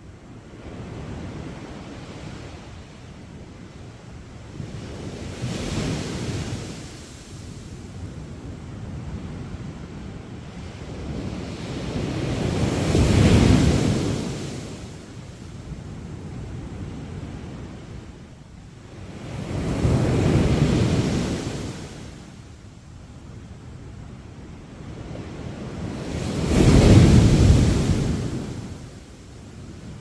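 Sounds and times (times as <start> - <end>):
sea waves surging onto shore: 25.6 - 30.0.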